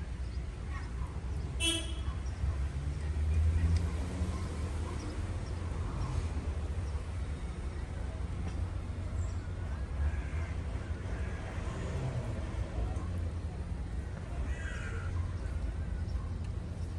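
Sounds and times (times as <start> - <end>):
distant traffic rumble: 0.0 - 16.9
faint bird calls: 14.4 - 15.6.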